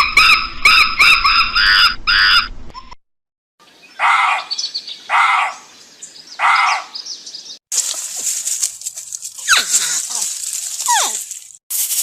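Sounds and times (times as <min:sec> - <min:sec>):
bird harsh calls: 0:03.8 - 0:07.6
hissing rattling noise: 0:07.7 - 0:12.0.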